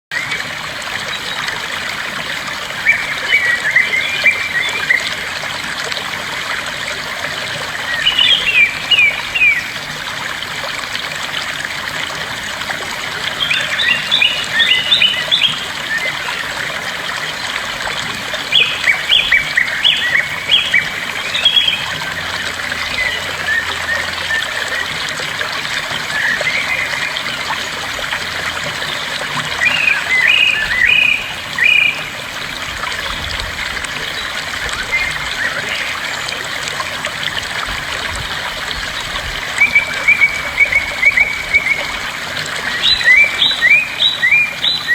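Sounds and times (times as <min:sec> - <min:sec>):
water trickling: 0:00.1 - 0:44.9
bird chirping: 0:29.6 - 0:32.1.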